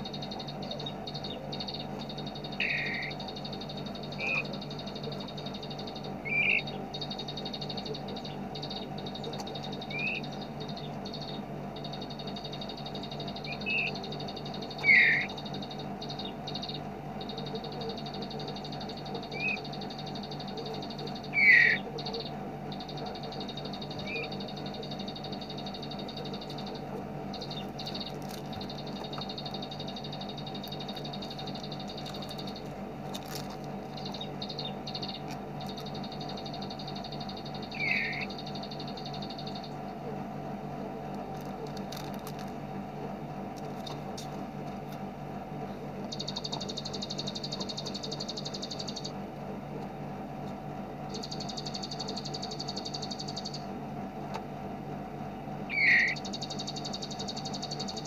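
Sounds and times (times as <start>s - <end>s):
small songbird chirping: 0.0s - 40.2s, 41.2s - 49.3s, 50.4s - 53.8s, 55.3s - 58.0s
low hum: 0.0s - 58.0s.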